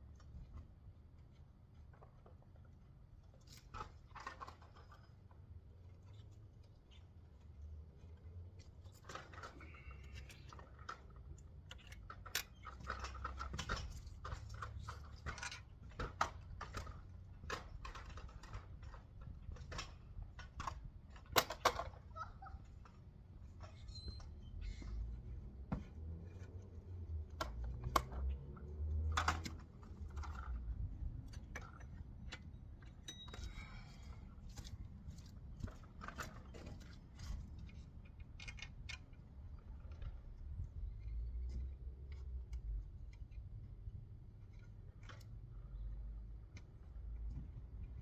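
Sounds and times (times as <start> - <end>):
metal tools clinking: 33.0 - 33.7.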